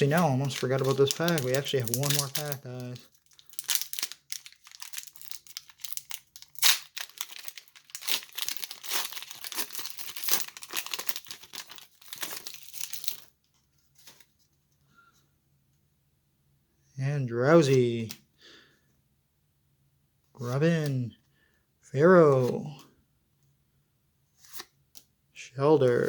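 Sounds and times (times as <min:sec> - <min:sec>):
foil wrapper crinkling and tearing: 0:00.0 - 0:13.3.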